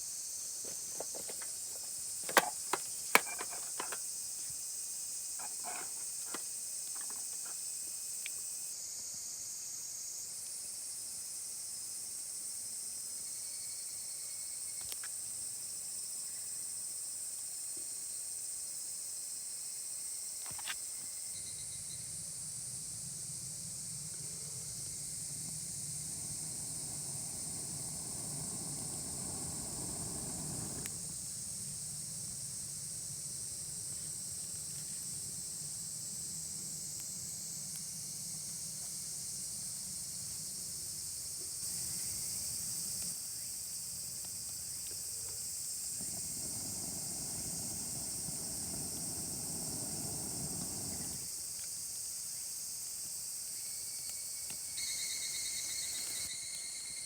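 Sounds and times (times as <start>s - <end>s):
insects droning: 0.0s - 57.0s
low steady rumble: 21.8s - 32.8s
faint clicks: 24.8s - 31.2s.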